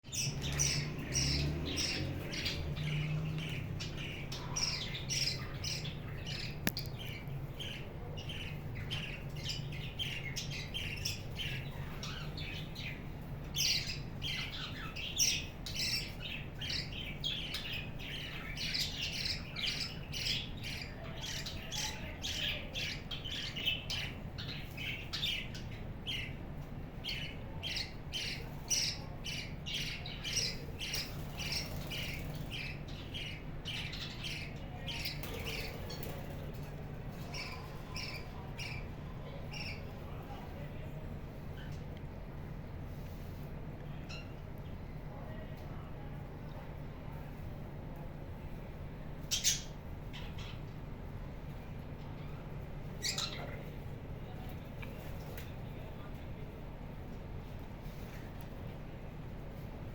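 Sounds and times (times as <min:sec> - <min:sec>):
budgerigars chattering and squawking: 0:00.1 - 0:26.4, 0:27.1 - 0:38.9, 0:53.0 - 0:53.6.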